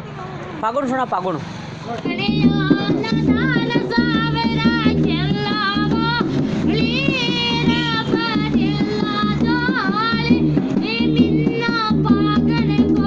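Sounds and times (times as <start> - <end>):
percussion beat: 1.8 - 13.0
girl singing folk song: 2.0 - 13.0.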